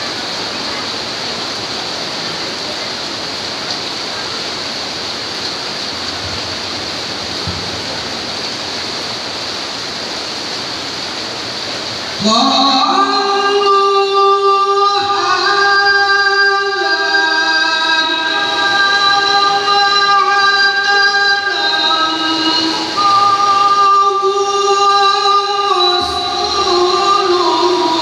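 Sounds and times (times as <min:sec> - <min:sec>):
heavy rain pouring: 0:00.0 - 0:28.0
person reciting melodically: 0:12.2 - 0:28.0.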